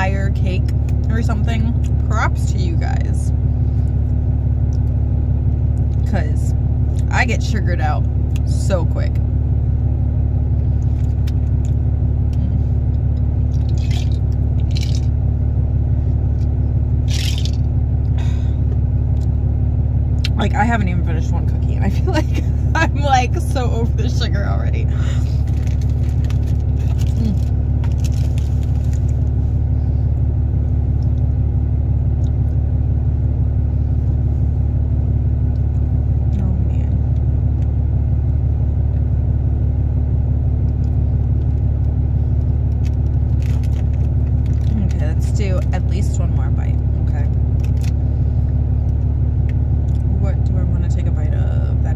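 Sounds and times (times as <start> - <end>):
low rumbling hum: 0.0 - 51.9
crunchy cookie chewing: 25.4 - 29.3, 42.4 - 44.8.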